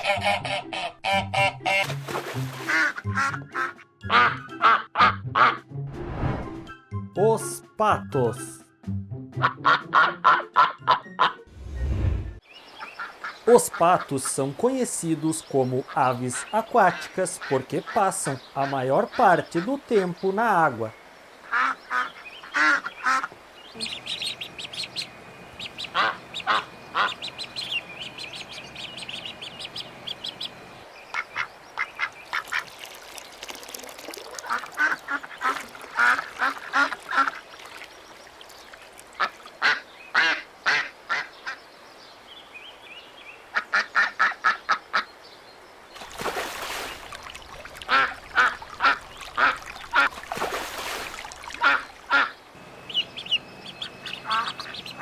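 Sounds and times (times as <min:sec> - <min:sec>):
ducks quacking: 0:00.0 - 0:05.6, 0:09.4 - 0:11.4, 0:12.8 - 0:14.6, 0:15.6 - 0:20.1, 0:21.4 - 0:32.7, 0:34.4 - 0:37.7, 0:39.1 - 0:41.6, 0:43.5 - 0:45.1, 0:46.1 - 0:55.0.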